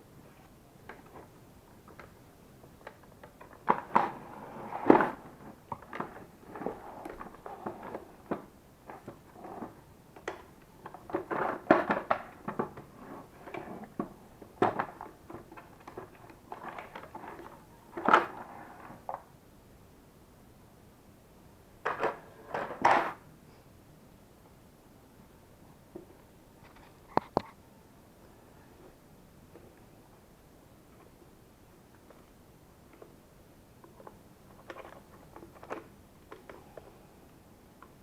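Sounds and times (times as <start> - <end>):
plastic parts clicking and scraping: 2.8 - 19.2, 33.8 - 36.9.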